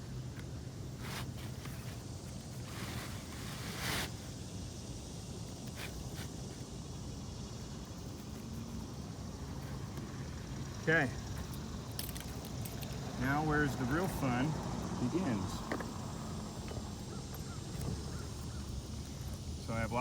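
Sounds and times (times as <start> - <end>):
outdoor background noise: 0.0 - 20.0
scraping rustle: 0.9 - 4.4.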